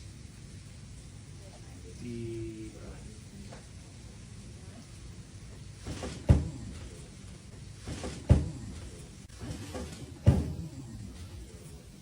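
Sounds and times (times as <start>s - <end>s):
sharp body thuds: 10.2s - 10.6s.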